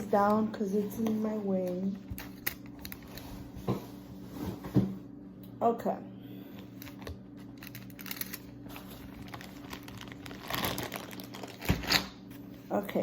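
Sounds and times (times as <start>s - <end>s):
faint steady hum: 0.0s - 13.0s
packaging crinkling and rustling: 6.7s - 12.5s.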